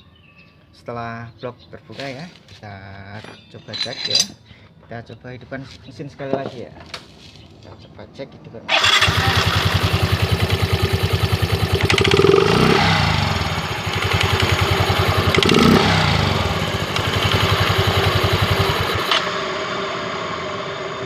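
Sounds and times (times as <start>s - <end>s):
scooter engine revving: 8.7s - 21.0s
scooter engine running: 8.7s - 21.0s.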